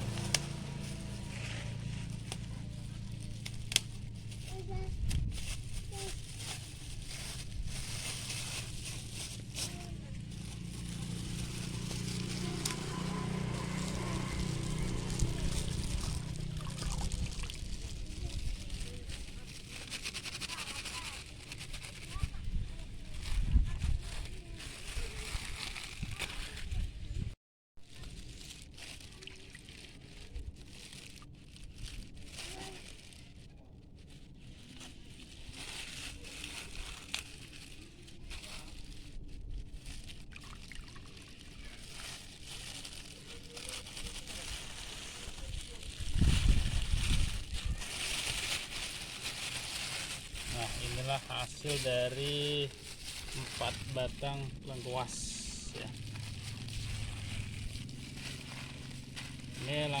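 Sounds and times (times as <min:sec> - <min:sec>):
plastic crinkling: 0:00.0 - 0:26.8, 0:27.8 - 1:00.0
liquid trickling and pouring: 0:16.0 - 0:18.0, 0:40.2 - 0:41.6.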